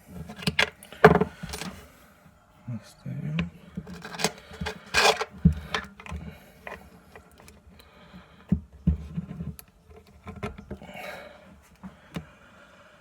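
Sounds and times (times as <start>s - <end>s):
small metal parts clicking and scraping: 3.9s - 7.5s.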